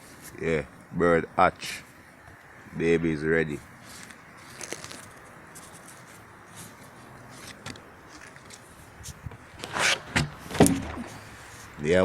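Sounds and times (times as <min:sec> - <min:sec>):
faint background hiss: 0:00.0 - 0:12.0
rustling scrapes: 0:03.8 - 0:11.8.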